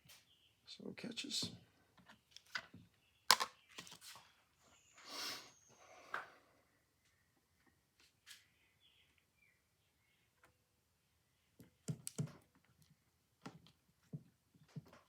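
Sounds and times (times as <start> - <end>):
clicks of small metal parts: 3.3 - 3.9.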